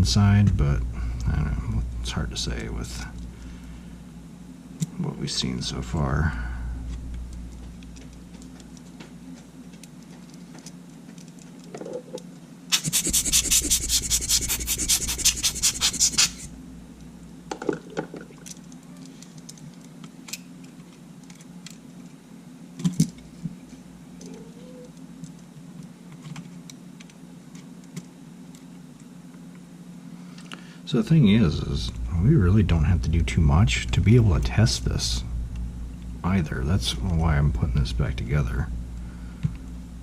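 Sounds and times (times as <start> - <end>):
rapid scratchy rasping strokes: 12.7 - 16.5
light clicks of small parts: 18.4 - 22.2, 24.2 - 29.6.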